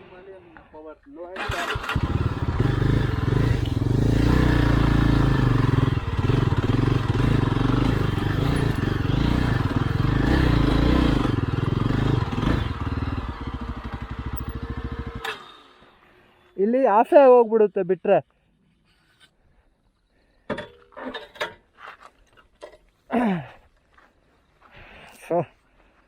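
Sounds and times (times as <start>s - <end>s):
motorcycle engine revving: 1.4s - 16.0s.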